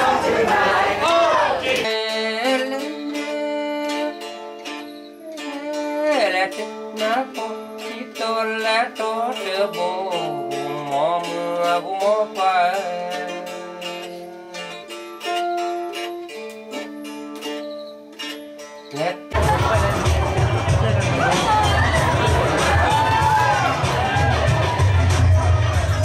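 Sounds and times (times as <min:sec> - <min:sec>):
person singing: 0:00.0 - 0:16.8
plucked string melody: 0:00.0 - 0:26.0.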